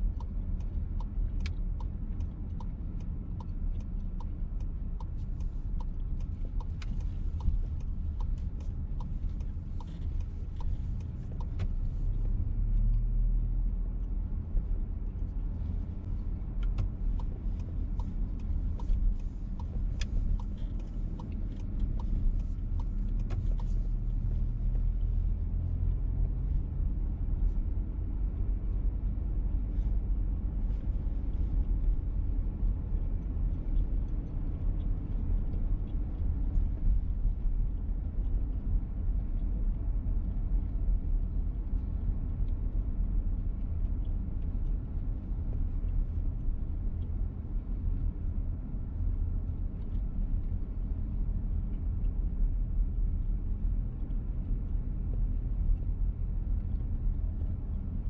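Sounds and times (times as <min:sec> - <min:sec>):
car engine and road rumble: 0:00.0 - 0:58.0
light regular ticking: 0:00.0 - 0:58.0.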